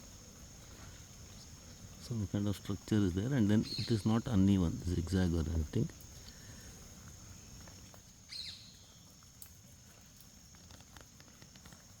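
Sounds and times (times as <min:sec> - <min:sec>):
high insect trill: 0:00.0 - 0:12.0
soft clicks and rustles: 0:09.1 - 0:12.0.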